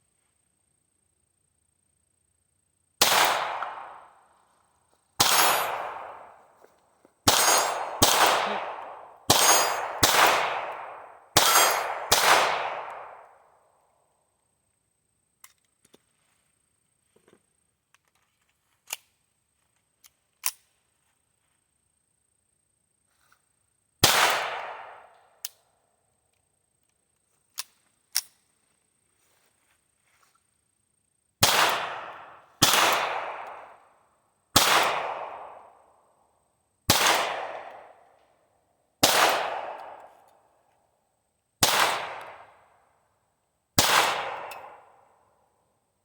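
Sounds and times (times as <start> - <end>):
pistol shots with echo: 3.0 - 4.1, 5.2 - 6.4, 7.2 - 13.3, 24.0 - 25.1, 31.4 - 33.8, 34.6 - 35.8, 36.9 - 38.0, 39.0 - 40.1, 41.6 - 42.6, 43.8 - 45.1.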